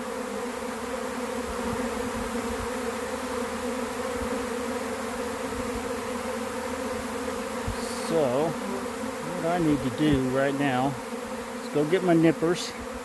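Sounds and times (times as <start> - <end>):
bees buzzing: 0.0 - 13.0.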